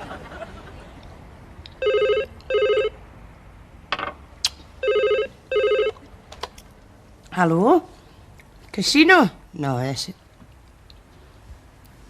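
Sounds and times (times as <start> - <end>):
telephone ringing: 1.8 - 3.0, 4.8 - 6.1.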